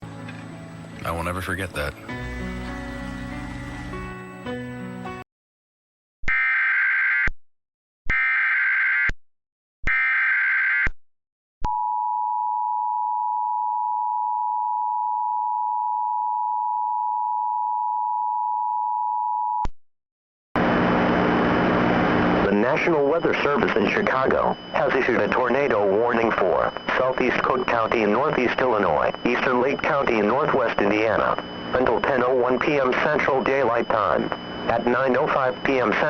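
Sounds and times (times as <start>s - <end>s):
digital data tones: 22.5s - 36.0s
two-tone attention signal: 22.6s - 36.0s.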